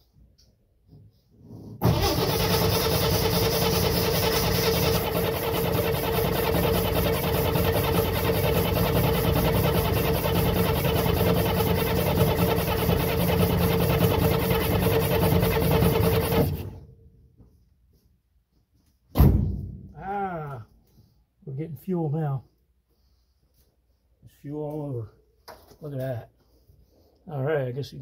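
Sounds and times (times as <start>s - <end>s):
engine cranking without starting: 1.8s - 16.8s.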